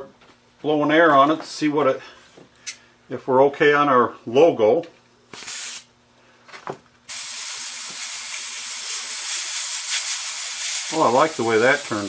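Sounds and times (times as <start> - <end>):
compressed air hissing: 5.4 - 5.9, 7.1 - 12.0.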